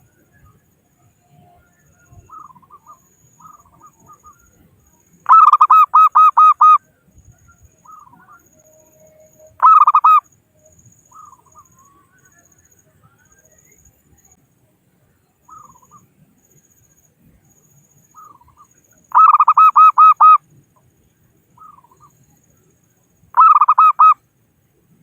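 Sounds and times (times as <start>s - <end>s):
dove cooing: 5.3s - 6.8s, 9.6s - 10.2s, 19.1s - 20.4s, 23.4s - 24.2s.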